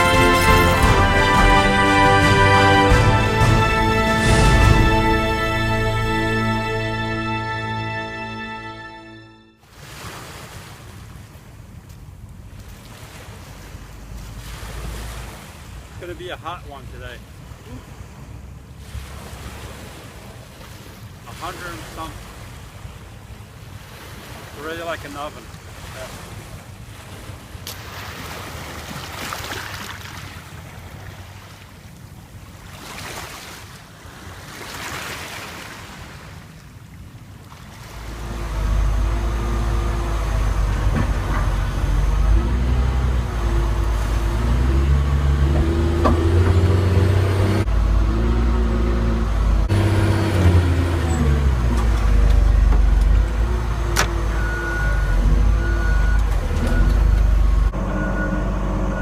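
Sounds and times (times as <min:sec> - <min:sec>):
large vehicle engine running: 0:38.0 - 0:59.0.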